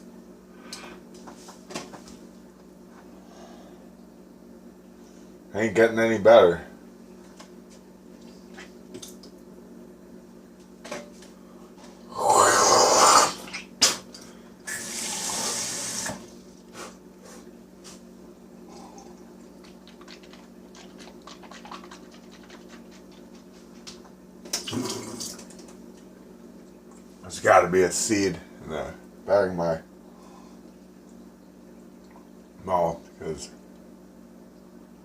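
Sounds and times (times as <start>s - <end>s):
water running from a tap: 14.7s - 16.2s.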